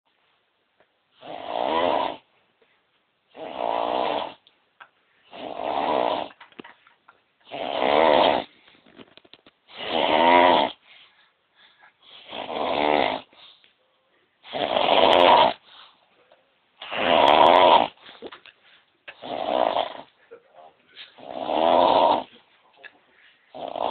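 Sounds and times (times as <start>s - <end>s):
loud rattling snoring: 1.2s - 2.2s, 3.4s - 4.4s, 5.3s - 6.4s, 7.5s - 8.5s, 9.7s - 10.8s, 12.2s - 13.3s, 14.5s - 15.6s, 16.8s - 18.0s, 19.2s - 20.1s, 21.2s - 22.3s, 23.5s - 23.9s.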